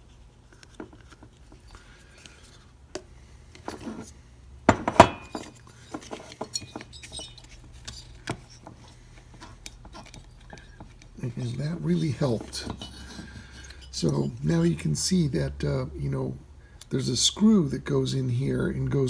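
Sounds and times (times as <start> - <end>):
small metal parts clinking: 10.0 - 14.4.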